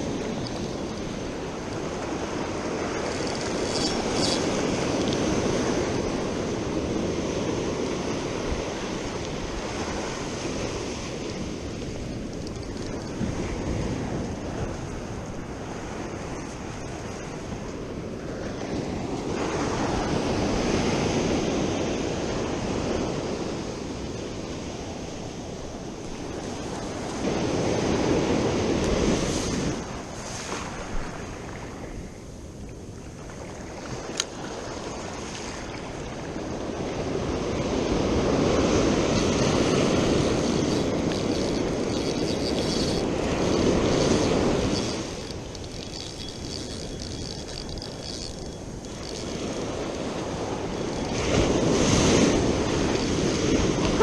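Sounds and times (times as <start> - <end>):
ocean surf breaking: 34.0 - 54.0.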